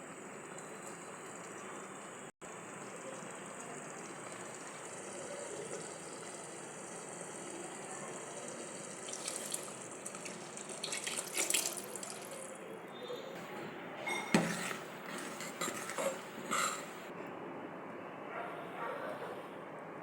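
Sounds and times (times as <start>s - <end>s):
tap water running into sink: 2.8s - 12.5s
dishes clattering: 13.2s - 17.1s.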